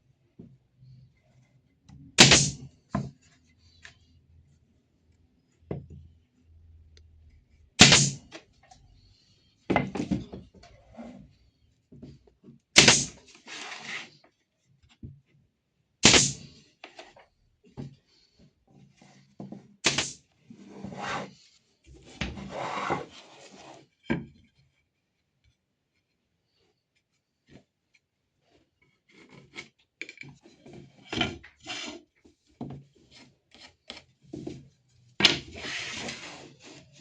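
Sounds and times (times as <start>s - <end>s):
wood scraping on wood: 12.9s - 14.2s, 19.0s - 21.5s, 22.2s - 24.9s, 30.4s - 37.0s.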